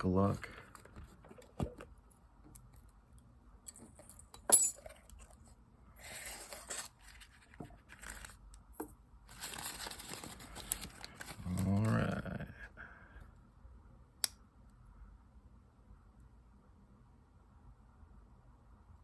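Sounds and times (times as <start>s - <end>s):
rustling and scraping: 4.8s - 8.4s, 9.3s - 11.9s.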